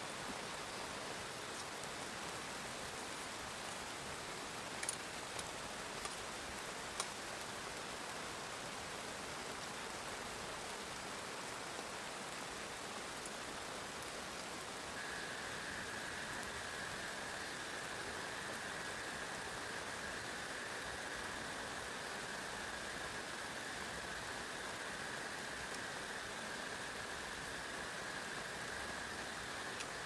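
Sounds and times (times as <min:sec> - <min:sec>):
heavy rain: 0:00.1 - 0:30.0
faint high-pitched tone: 0:14.8 - 0:30.0.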